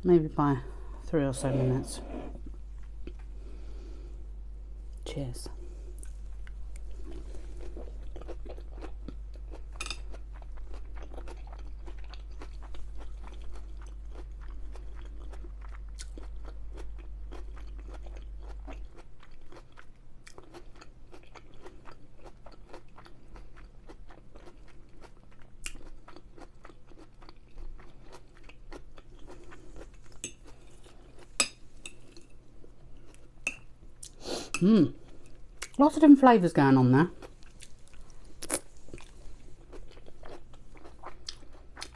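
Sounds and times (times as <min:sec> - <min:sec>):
low steady hum: 0:00.0 - 0:41.9
close chewing with wet mouth clicks: 0:06.0 - 0:31.3.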